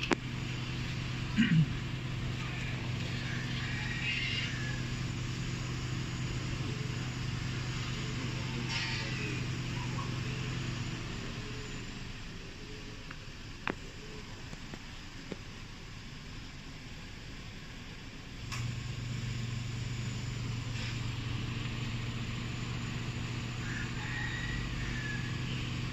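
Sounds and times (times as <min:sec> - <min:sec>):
car engine running: 0:00.0 - 0:25.9.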